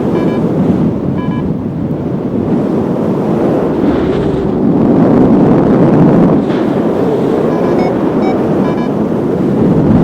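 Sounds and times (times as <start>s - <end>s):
wind buffeting microphone: 0.0s - 10.0s
short electronic beeps: 0.1s - 0.5s, 1.2s - 1.5s, 7.5s - 8.9s.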